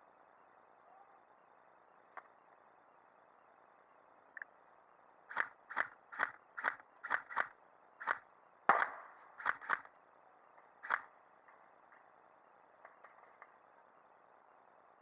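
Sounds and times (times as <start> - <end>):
airsoft gun shots: 5.3 - 9.9.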